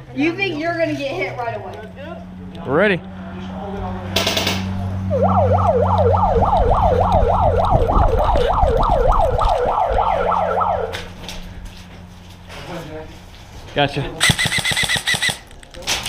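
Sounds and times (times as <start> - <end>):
electronic siren wailing: 5.0 - 11.2.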